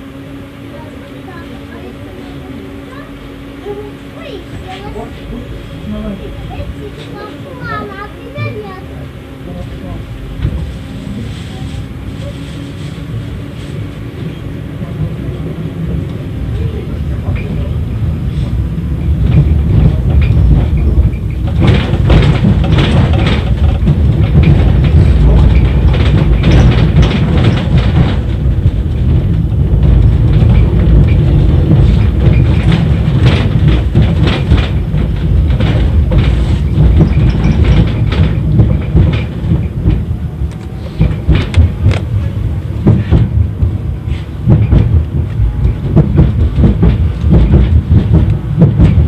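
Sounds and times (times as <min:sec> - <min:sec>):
tram rumbling: 0:00.0 - 0:49.0
wheels knocking over rail joints: 0:16.5 - 0:49.0.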